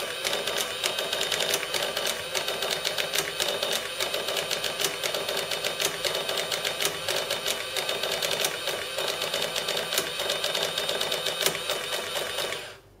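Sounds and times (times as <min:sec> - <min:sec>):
cash register printer clicking: 0:00.0 - 0:12.8.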